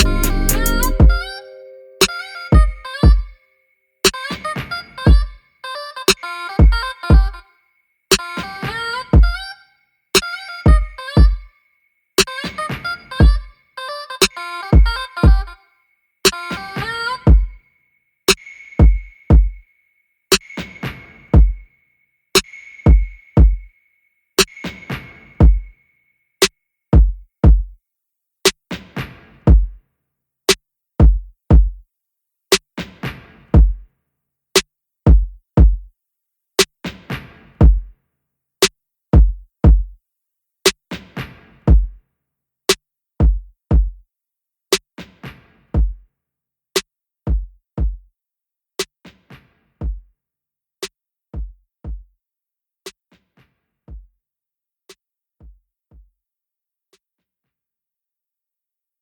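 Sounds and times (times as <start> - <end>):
drum machine beat: 0.0 - 3.3, 5.1 - 5.3, 6.1 - 7.4, 9.2 - 9.4, 10.7 - 11.4, 13.2 - 13.5, 14.2 - 15.6, 16.8 - 17.6, 18.3 - 19.6, 21.4 - 21.6, 22.4 - 23.7, 25.4 - 25.7, 27.0 - 27.8, 29.5 - 29.7, 31.0 - 31.8, 33.6 - 33.8, 35.1 - 35.9, 37.6 - 37.9, 39.2 - 40.0, 41.7 - 42.0, 43.2 - 44.0, 45.8 - 46.0, 47.3 - 48.0, 49.8 - 50.1, 51.4 - 52.1, 53.9 - 54.1.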